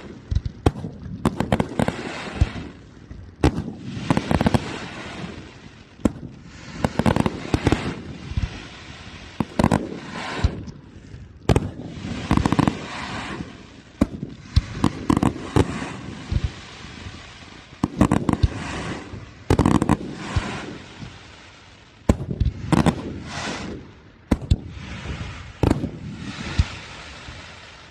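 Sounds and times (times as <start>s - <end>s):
firework crackle: 0.0s - 27.9s
firework shells bursting: 9.4s - 21.3s, 22.0s - 27.9s.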